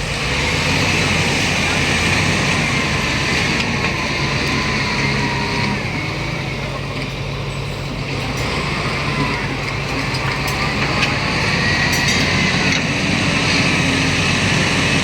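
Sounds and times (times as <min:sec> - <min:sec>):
heavy machinery engine drone: 0:00.0 - 0:15.0.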